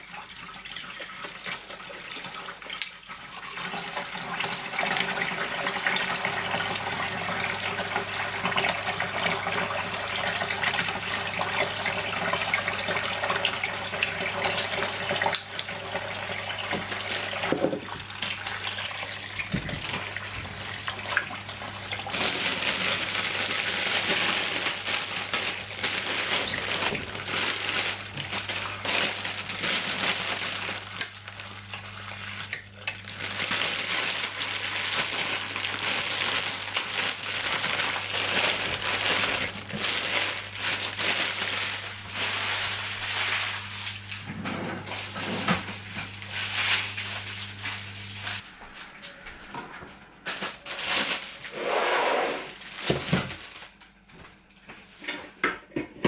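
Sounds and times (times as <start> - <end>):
low appliance hum: 0.0 - 56.0
pots and utensils clattering: 16.7 - 18.1
crackling hiss of cooking: 45.0 - 48.8.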